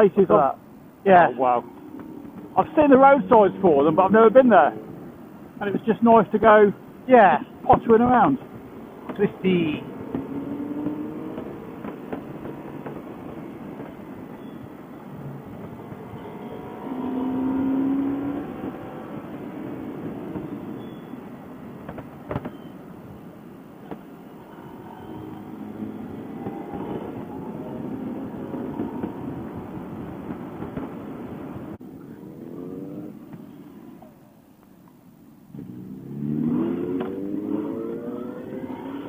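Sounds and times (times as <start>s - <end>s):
motorcycle engine revving: 8.9s - 13.9s, 15.8s - 20.4s, 24.4s - 30.4s, 35.5s - 39.0s.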